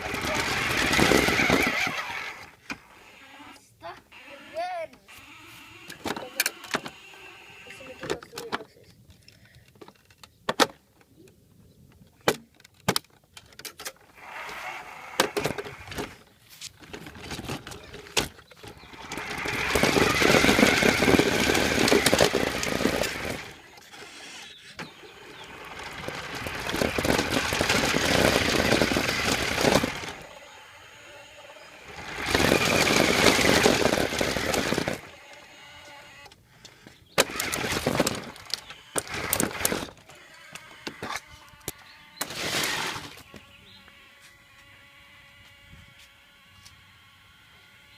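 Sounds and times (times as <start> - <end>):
remote-control car motor whining: 0.0 - 8.5, 14.1 - 47.9.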